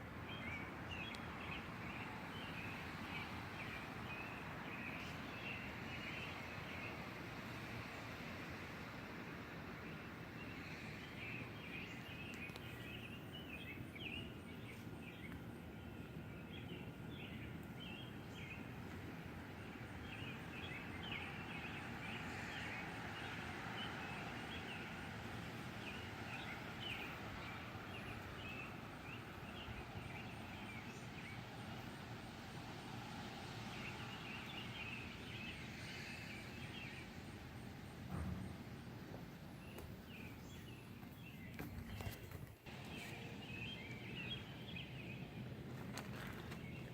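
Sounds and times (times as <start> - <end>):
low outdoor background hiss: 0.0 - 41.7, 42.4 - 46.9
birds chirping: 9.9 - 32.4, 33.5 - 46.9.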